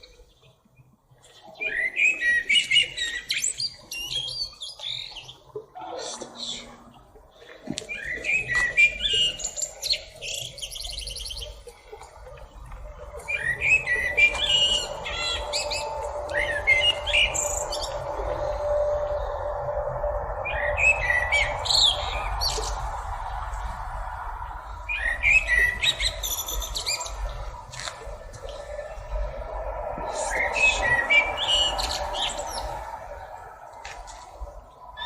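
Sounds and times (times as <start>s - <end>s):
bird chirping and whistling: 7.9s - 11.5s, 13.2s - 19.4s, 20.4s - 22.8s, 24.9s - 27.2s, 30.1s - 32.8s
steady low hum: 11.5s - 35.0s.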